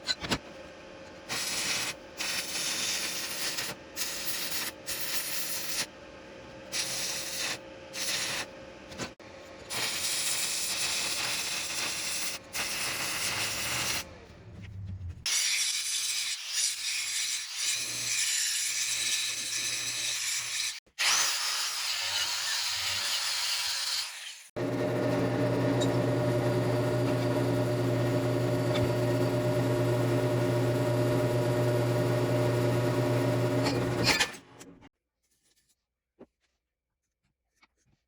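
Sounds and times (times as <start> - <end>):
low motor hum: 14.0 - 15.3, 24.6 - 34.9
power tool grinding steel: 15.3 - 34.5.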